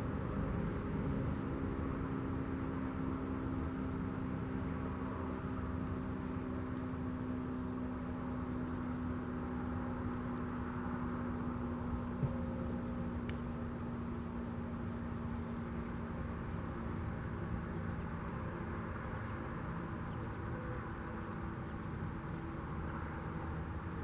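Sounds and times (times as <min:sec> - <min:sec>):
low mechanical hum: 0:00.0 - 0:24.0.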